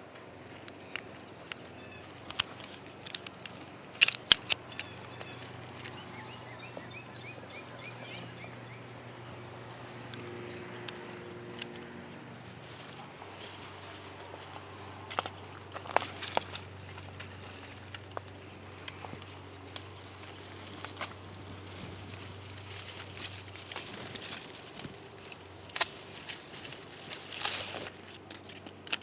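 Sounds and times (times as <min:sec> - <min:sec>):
high insect trill: 0:00.0 - 0:29.0
bird chirps: 0:04.7 - 0:09.0.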